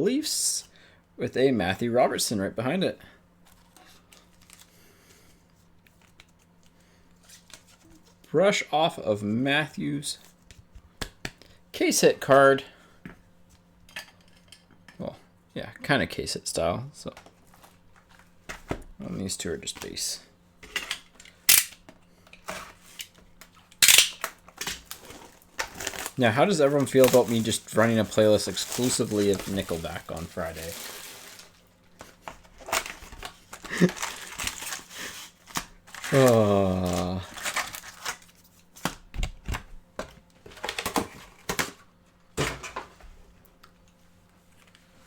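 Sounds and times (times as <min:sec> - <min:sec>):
cards rustling and shuffling: 0:05.6 - 0:08.3, 0:21.1 - 0:39.6.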